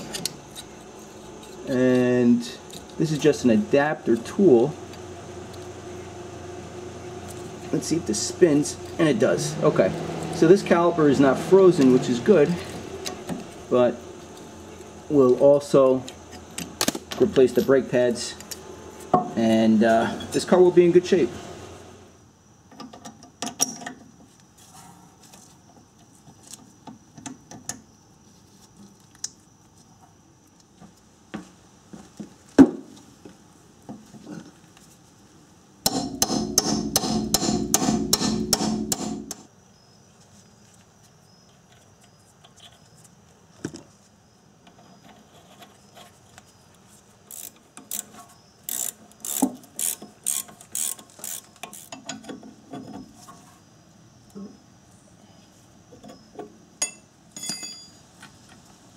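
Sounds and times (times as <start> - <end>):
ratchet wrench clicking: 47.3 - 52.1.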